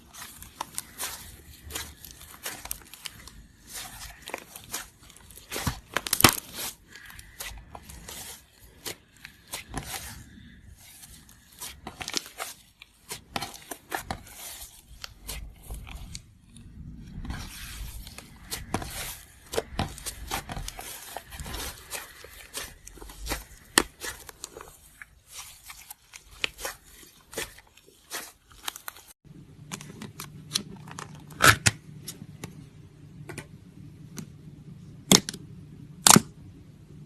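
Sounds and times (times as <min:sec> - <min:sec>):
sticky slime crackles and pops: 0:00.1 - 0:16.2.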